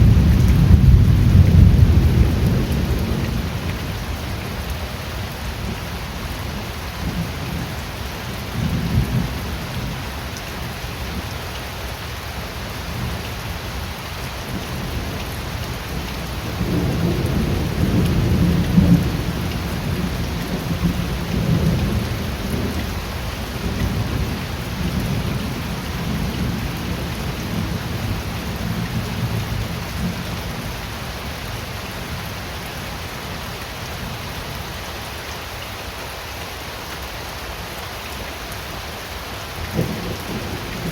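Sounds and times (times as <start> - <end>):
rolling thunder: 0.0 - 3.7, 16.4 - 22.9
heavy rain: 0.0 - 40.9.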